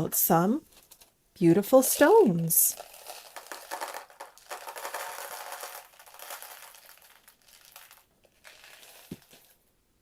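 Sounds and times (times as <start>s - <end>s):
plastic packaging crinkling: 2.0s - 9.7s.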